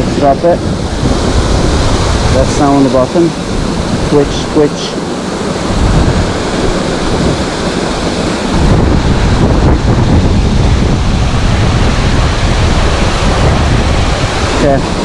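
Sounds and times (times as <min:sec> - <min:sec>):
wind buffeting microphone: 0:00.0 - 0:15.0.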